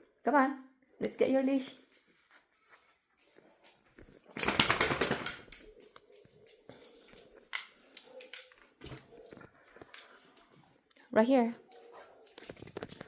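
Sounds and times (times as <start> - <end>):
dog claws clicking on floor: 2.7 - 13.0.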